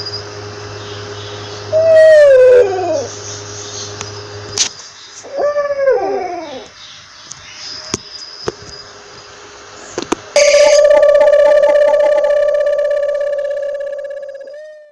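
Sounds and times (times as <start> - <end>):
owl wailing call: 1.7 - 3.1, 5.2 - 6.7, 10.4 - 14.9
loud electronic tone: 10.4 - 14.9.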